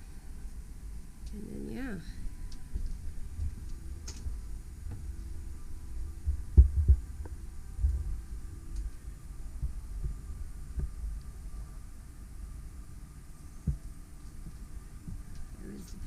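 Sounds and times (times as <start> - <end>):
steady low rumble: 0.0 - 16.0
dull low thumps: 2.7 - 11.8, 13.6 - 15.3.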